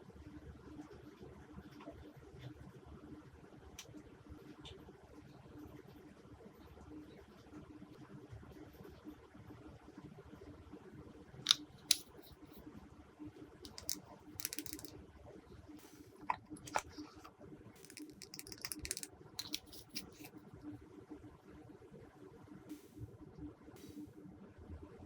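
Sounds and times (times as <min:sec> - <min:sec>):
slime sticky clicks and pops: 0:13.7 - 0:14.9, 0:17.8 - 0:20.1.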